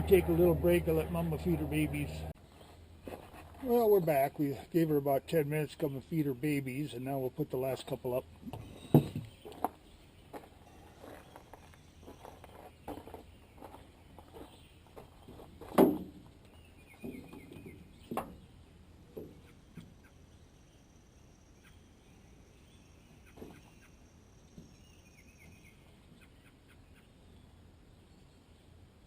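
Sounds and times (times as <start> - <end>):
building work knocks and clunks: 8.5 - 9.8, 12.9 - 16.4.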